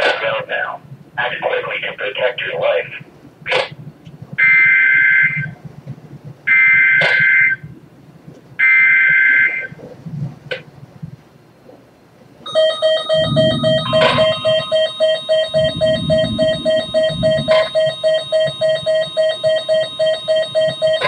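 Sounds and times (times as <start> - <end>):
pulsing electronic tone: 12.5 - 21.0
two-tone digital data screech: 12.5 - 21.0.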